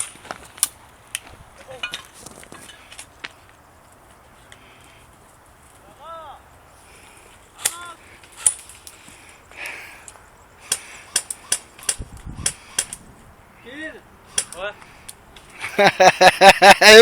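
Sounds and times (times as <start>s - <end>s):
airsoft gun shots: 14.3s - 14.6s
people talking: 16.6s - 17.0s.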